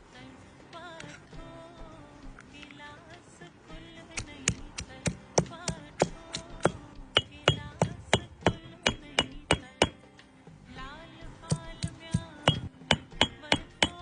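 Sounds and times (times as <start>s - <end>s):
soft background music: 0.0s - 14.0s
rhythmic sharp knocking: 4.4s - 10.0s, 11.5s - 14.0s.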